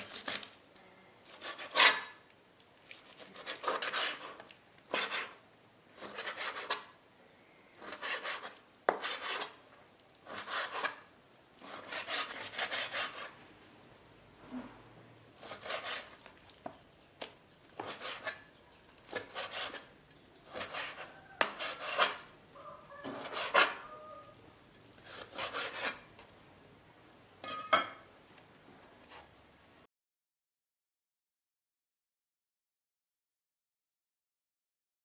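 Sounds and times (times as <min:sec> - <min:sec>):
knife rasping strokes: 0:01.3 - 0:02.2, 0:03.1 - 0:05.4, 0:06.0 - 0:07.0, 0:07.8 - 0:09.6, 0:10.2 - 0:13.4, 0:15.4 - 0:16.2, 0:17.8 - 0:18.5, 0:19.1 - 0:19.9, 0:20.5 - 0:22.3, 0:23.0 - 0:24.0, 0:25.0 - 0:26.1.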